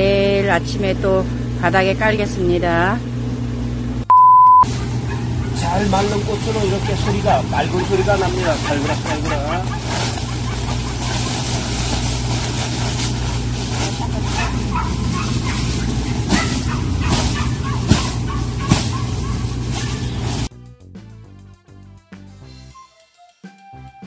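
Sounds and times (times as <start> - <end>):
low machine hum: 0.0 - 20.5
dried peppers rattling: 4.7 - 20.5.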